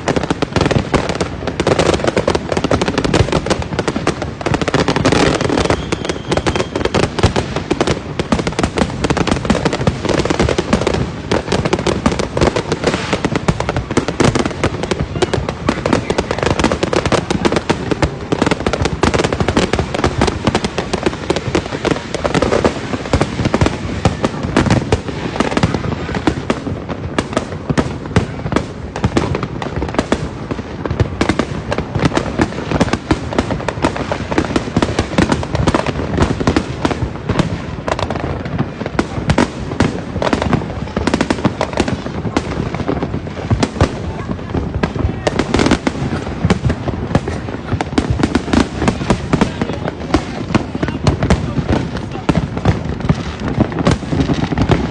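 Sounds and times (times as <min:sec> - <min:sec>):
fireworks and firecrackers crackling: 0:00.0 - 0:54.9.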